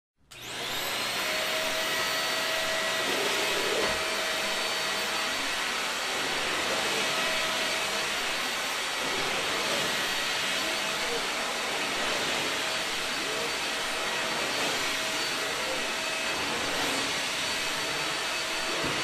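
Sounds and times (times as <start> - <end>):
vacuum cleaner running: 0.3 - 19.0.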